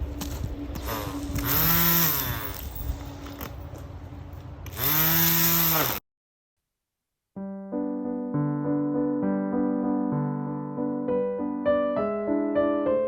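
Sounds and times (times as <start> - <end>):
grass trimmer engine revving: 1.4 - 2.5, 4.7 - 6.0.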